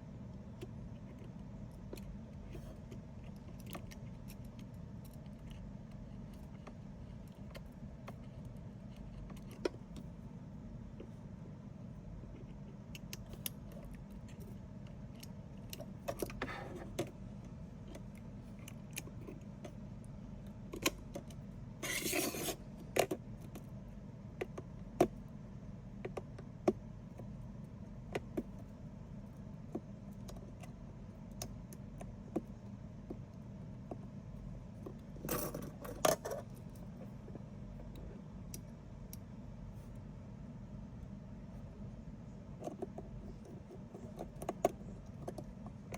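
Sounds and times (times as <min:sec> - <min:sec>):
steady low hum: 0:00.0 - 0:45.9
tool scrapes: 0:21.8 - 0:22.6.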